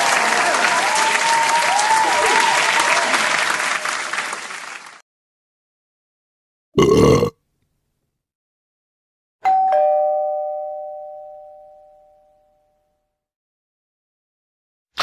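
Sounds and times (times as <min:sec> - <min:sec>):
two-tone doorbell chime: 0:09.4 - 0:13.2.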